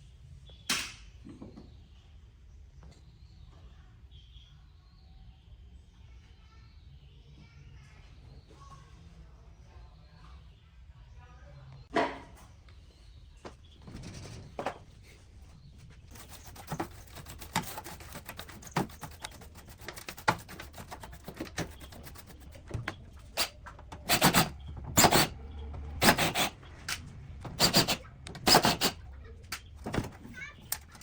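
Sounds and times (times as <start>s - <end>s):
rasping scrubbing strokes: 16.1s - 22.7s
light scrapes and clicks on metal: 16.1s - 25.4s.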